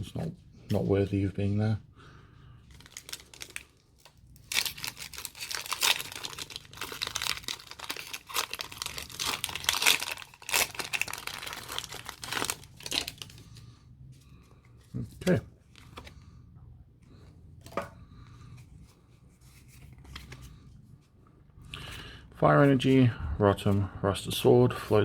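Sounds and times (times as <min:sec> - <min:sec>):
foil wrapper tearing and crinkling: 0:02.7 - 0:13.4.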